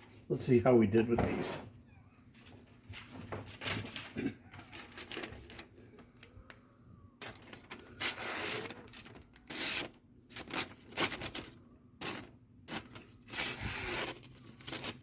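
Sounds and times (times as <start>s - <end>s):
knife slicing through paper: 7.2s - 15.0s.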